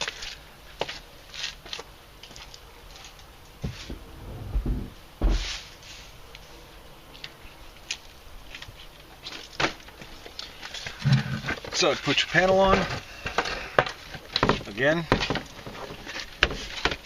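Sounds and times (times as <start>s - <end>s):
heavier thumps: 3.6s - 5.6s.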